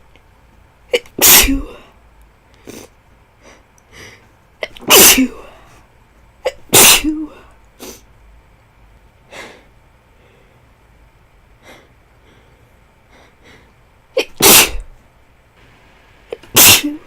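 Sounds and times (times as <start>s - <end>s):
woman sneezing: 0.9s - 1.8s, 4.6s - 5.6s, 6.4s - 7.4s, 14.2s - 14.9s, 16.3s - 17.0s.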